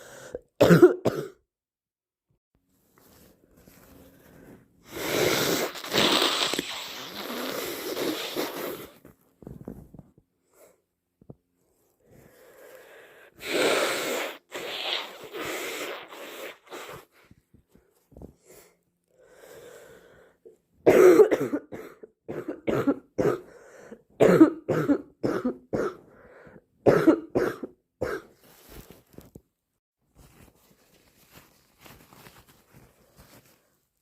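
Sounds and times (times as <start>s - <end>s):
person coughing: 0.6s - 1.4s, 20.8s - 23.5s, 24.2s - 26.0s, 26.8s - 28.4s.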